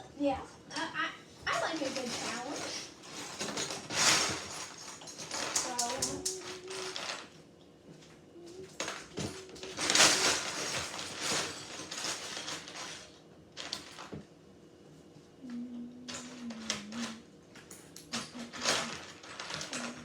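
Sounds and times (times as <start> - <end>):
plastic bricks clattering: 18.2 - 20.0.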